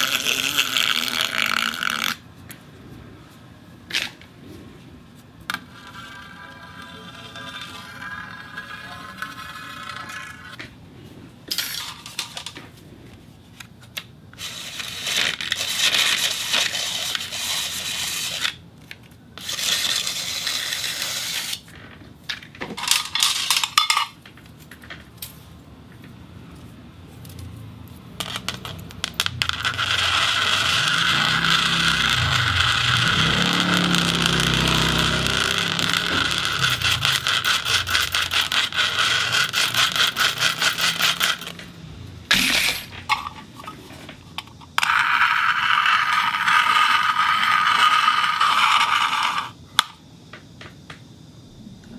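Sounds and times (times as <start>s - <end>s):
materials scraping on spinning turntable: 2.9s - 12.6s, 28.2s - 49.6s.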